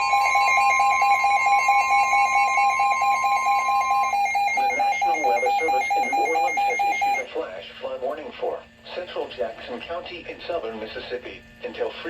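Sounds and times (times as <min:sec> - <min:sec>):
rapid alarm beeps: 0:00.0 - 0:07.3
steady warning alarm tone: 0:00.0 - 0:07.4.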